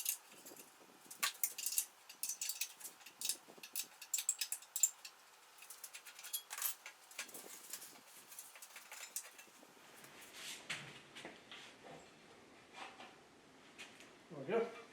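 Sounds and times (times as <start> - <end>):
small metal tools clinking: 0.0 - 9.6.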